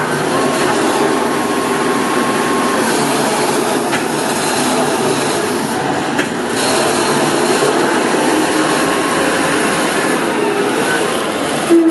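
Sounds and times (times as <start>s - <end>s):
concrete mixer truck running: 0.0s - 11.9s.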